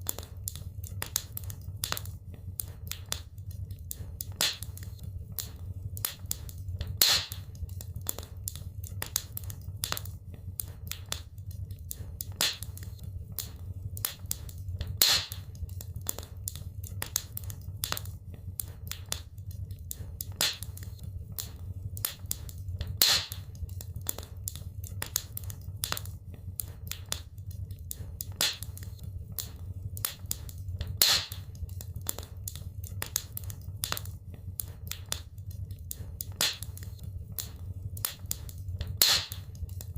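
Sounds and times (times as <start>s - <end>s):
fire crackling and popping: 0.0s - 39.9s
low rumble of flames: 0.0s - 39.9s
loud fire pop: 7.0s - 7.4s, 15.0s - 15.4s, 23.0s - 23.4s, 31.0s - 31.4s, 39.0s - 39.4s.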